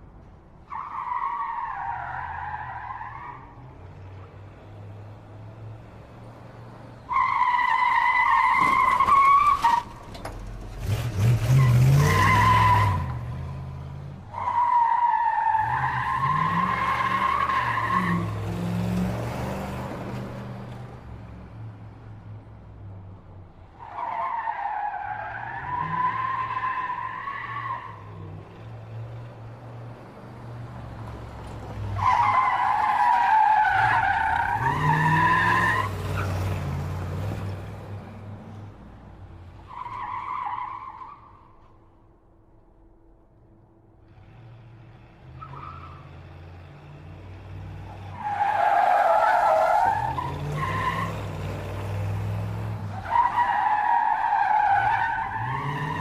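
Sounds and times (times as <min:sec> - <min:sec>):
car tyres squealing: 0:00.6 - 0:03.7, 0:07.0 - 0:20.3, 0:23.7 - 0:28.4, 0:31.2 - 0:37.6, 0:39.6 - 0:41.8, 0:45.3 - 0:46.6, 0:47.5 - 0:56.0
car engine revving: 0:10.6 - 0:14.5.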